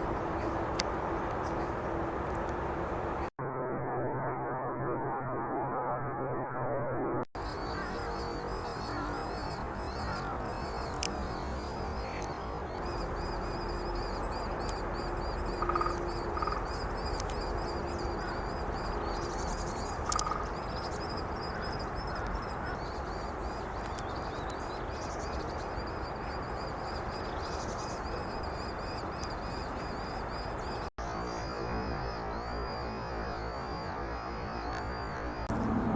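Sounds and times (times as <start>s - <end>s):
steady rushing noise: 0.0s - 3.6s, 7.4s - 34.5s, 35.3s - 35.9s
faint high chirping: 7.4s - 35.9s.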